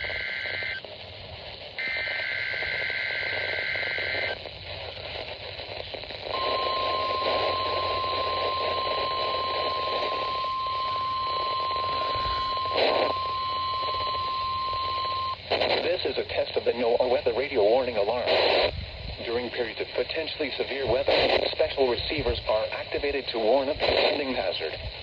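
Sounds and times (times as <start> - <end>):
steady warning alarm tone: 0.0 - 0.8, 1.8 - 4.4, 6.3 - 15.4
warbling data burst: 0.0 - 0.9, 1.8 - 4.5, 5.8 - 16.6
radio static: 0.0 - 25.0
static crackle: 0.0 - 25.0.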